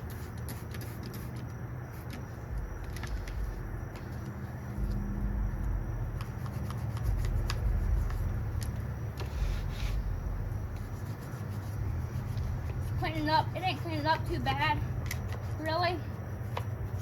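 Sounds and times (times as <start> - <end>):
steady low rumble: 0.0 - 17.0
brush scrubbing: 5.6 - 15.8.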